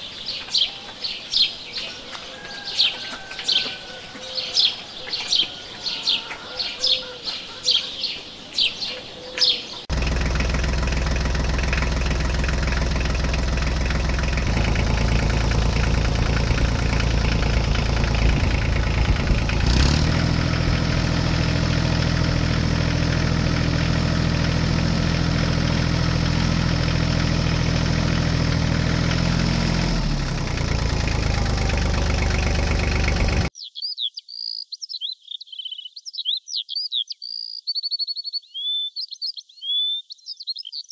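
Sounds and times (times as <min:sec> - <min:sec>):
birds chirping: 0:00.0 - 0:24.4, 0:30.3 - 0:40.9
vehicle engine running: 0:09.9 - 0:33.5.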